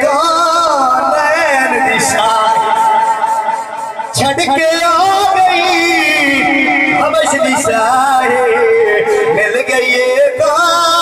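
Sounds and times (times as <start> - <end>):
man singing melismatic devotional song: 0.0 - 11.0.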